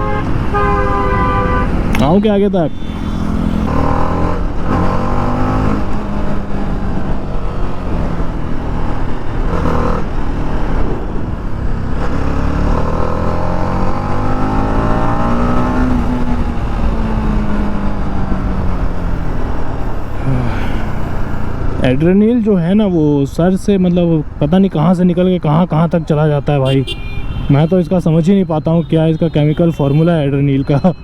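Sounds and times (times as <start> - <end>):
motorcycle engine revving: 0.0 - 21.9.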